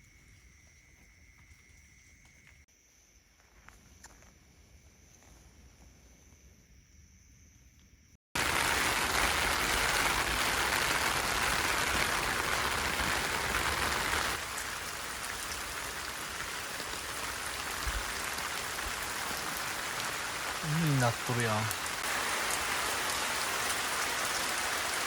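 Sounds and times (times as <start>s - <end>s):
heavy rain pouring: 8.4s - 25.0s.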